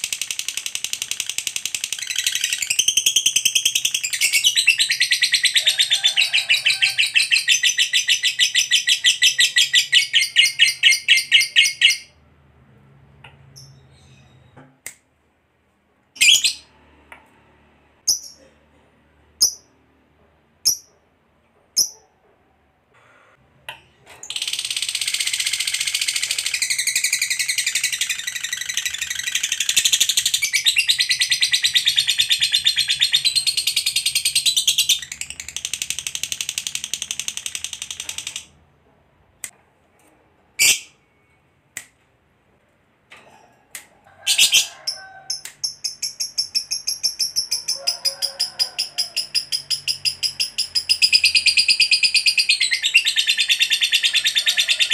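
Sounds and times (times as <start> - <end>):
lovebird chattering trill: 45.3 - 48.0.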